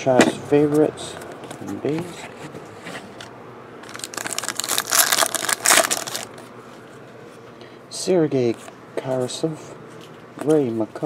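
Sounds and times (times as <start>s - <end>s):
foil wrapper tearing and crinkling: 3.9s - 6.3s.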